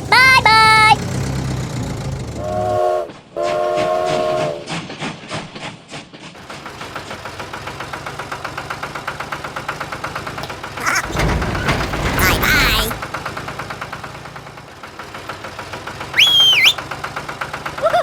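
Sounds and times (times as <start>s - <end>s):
train wheels clickety-clack: 2.3s - 10.3s
train horn blasts: 2.4s - 4.6s.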